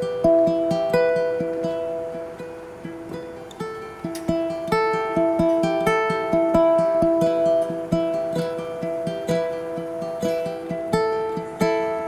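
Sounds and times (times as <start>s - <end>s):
plucked guitar melody: 0.0s - 12.0s.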